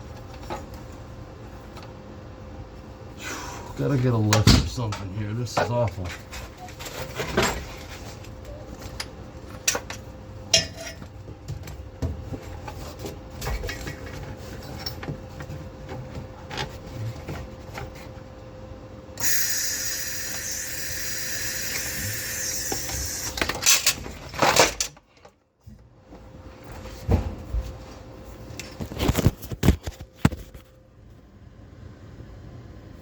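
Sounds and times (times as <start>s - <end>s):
welding arc hissing and crackling: 19.2s - 23.4s.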